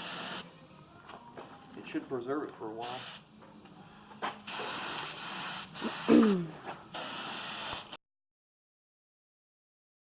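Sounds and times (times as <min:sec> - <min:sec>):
paint sprayer hissing: 0:00.0 - 0:01.0, 0:02.8 - 0:08.0.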